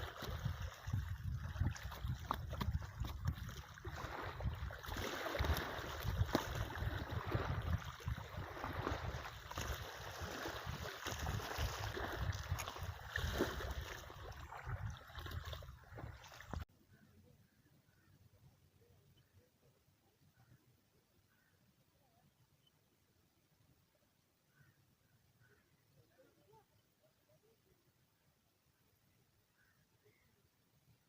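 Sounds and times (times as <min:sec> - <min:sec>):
wind buffeting microphone: 0:00.0 - 0:16.6
water lapping: 0:00.0 - 0:16.7.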